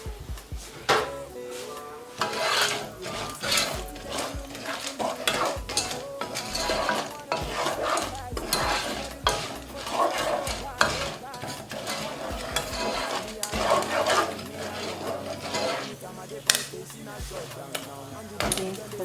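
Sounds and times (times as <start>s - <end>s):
oil sizzling: 0.0s - 19.0s
pot rattling: 2.2s - 19.0s.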